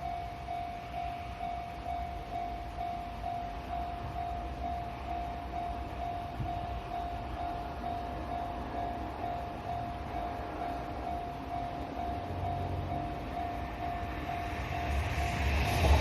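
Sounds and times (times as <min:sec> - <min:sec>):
low rumble: 0:11.0 - 0:16.0.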